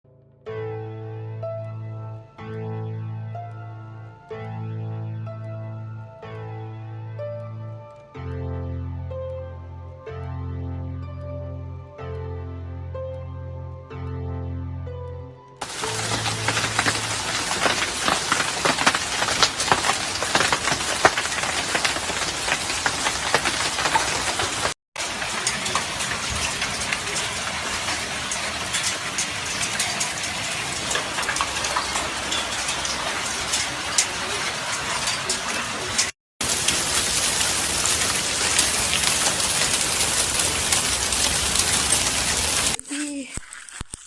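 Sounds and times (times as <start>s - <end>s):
small stones pattering on hard surfaces: 15.6s - 35.7s, 36.4s - 44.0s.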